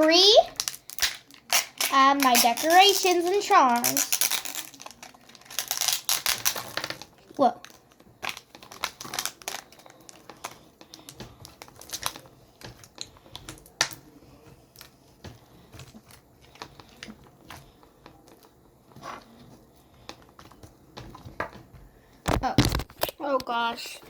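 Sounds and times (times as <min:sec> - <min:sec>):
small plastic pieces clicking: 0:00.5 - 0:10.6.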